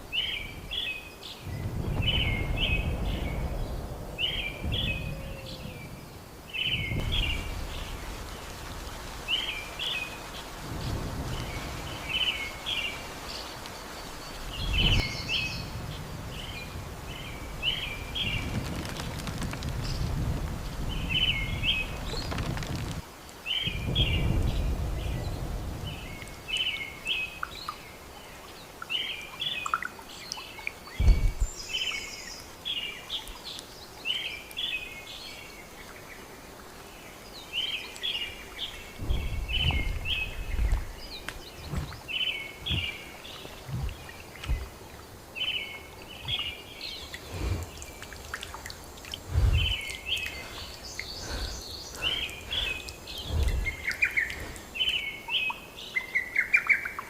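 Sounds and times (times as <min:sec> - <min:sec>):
low rumbles: 0:01.4 - 0:09.3, 0:38.6 - 0:45.0, 0:46.2 - 0:55.3
bird chirping: 0:37.1 - 0:48.1, 0:49.2 - 0:57.0.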